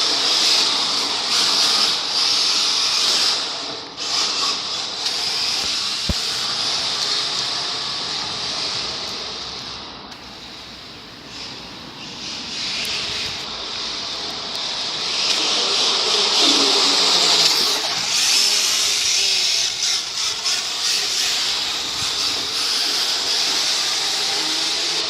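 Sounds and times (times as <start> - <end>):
model car buzzing whine: 0.0 - 25.0.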